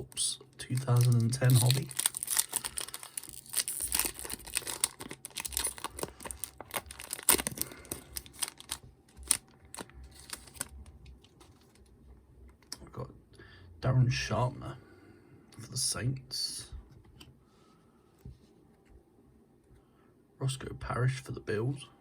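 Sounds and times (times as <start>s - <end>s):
wrapper tearing and crinkling: 0.6s - 10.8s.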